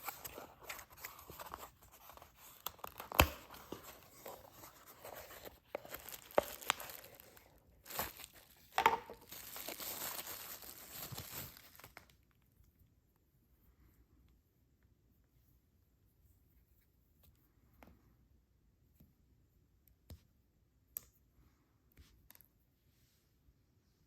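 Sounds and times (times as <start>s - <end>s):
packaging tearing and crinkling: 0.0s - 12.1s.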